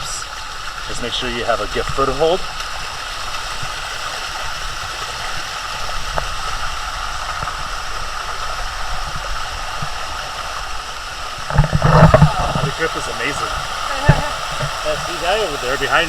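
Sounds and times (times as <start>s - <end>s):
water running down steps: 0.0s - 16.0s.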